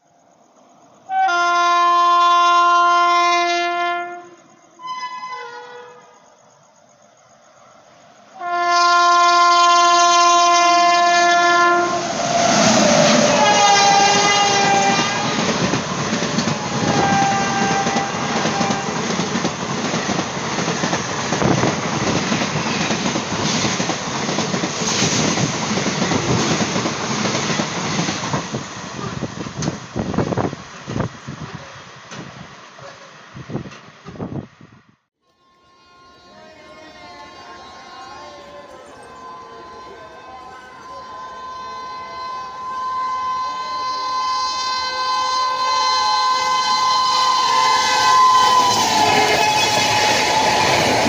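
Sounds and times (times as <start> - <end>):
train coaches rumbling past: 0.2 - 34.8, 35.6 - 51.0
locomotive horn blast: 1.1 - 6.2, 8.4 - 15.7, 16.4 - 19.1, 35.3 - 51.0
wheels clickety-clack over rail joints: 14.3 - 34.3.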